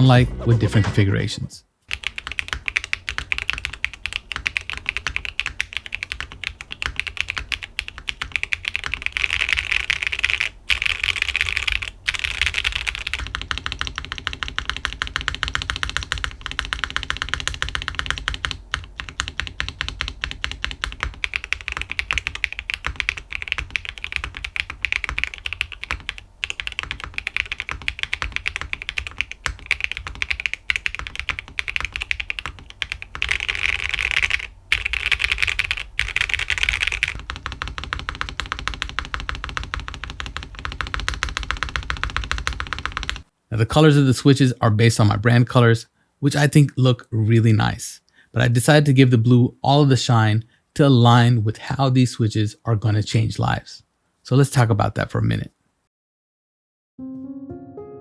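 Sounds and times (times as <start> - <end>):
mechanical keyboard typing: 0.1 - 43.2.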